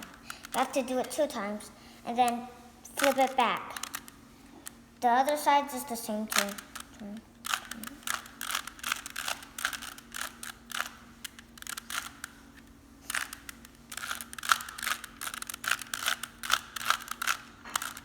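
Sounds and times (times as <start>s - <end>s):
plastic puzzle cube clicking: 3.0s - 4.8s, 6.3s - 12.4s, 13.1s - 18.0s.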